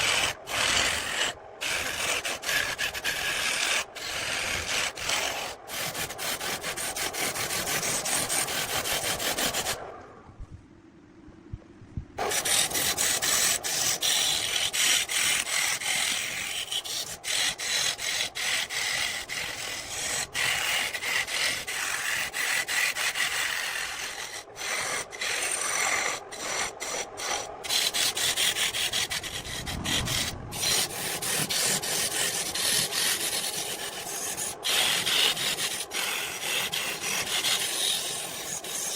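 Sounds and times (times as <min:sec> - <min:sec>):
lathe tool scraping wood: 0:00.0 - 0:09.8, 0:12.2 - 0:38.9.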